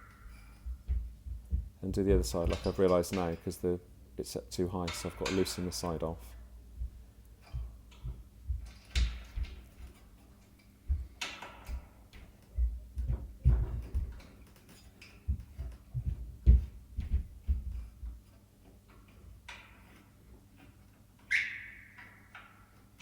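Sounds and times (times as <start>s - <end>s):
dull knocks and thumps: 0.6s - 2.8s, 6.7s - 10.1s, 10.8s - 14.6s, 15.2s - 18.4s.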